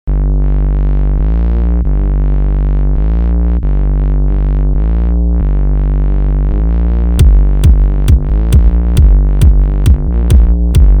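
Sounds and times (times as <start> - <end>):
steady bass: 0.0 - 11.0
synthesizer chords: 0.1 - 11.0.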